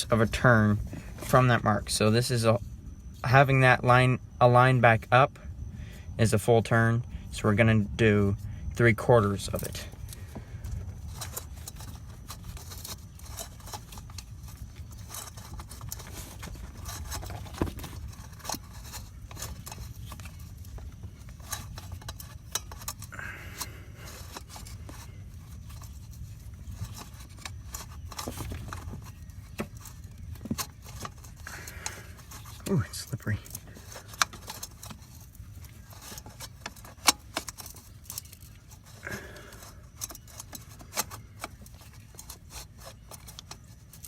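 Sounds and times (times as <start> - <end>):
oil filter scraping and clicking: 0.0 - 5.3, 6.2 - 44.0
low steady hum: 0.0 - 44.0.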